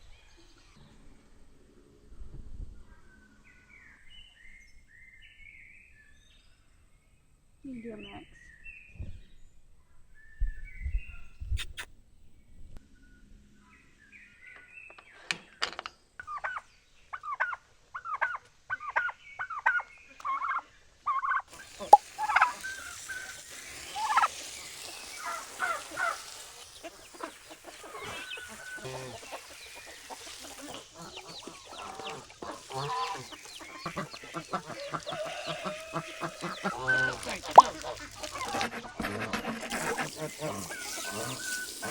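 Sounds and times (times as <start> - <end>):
poultry calling: 17.3 - 41.9
steady hiss: 21.5 - 38.6, 39.6 - 41.9.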